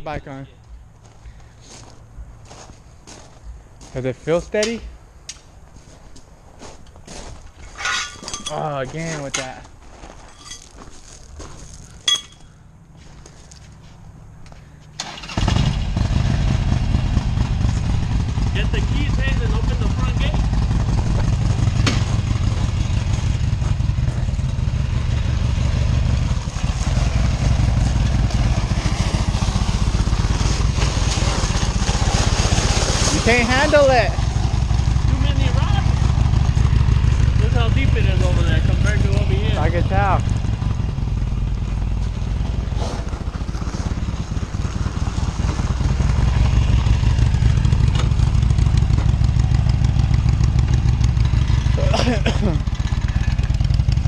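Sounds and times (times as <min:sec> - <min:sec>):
motorcycle engine running: 0:12.1 - 0:54.0.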